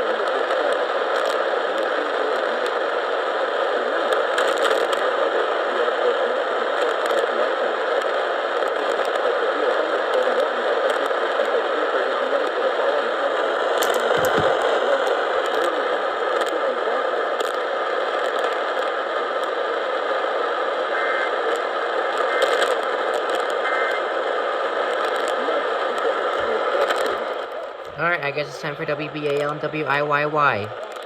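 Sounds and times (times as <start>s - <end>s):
radio static hiss: 0.0s - 31.0s
faint crackles: 20.9s - 24.1s.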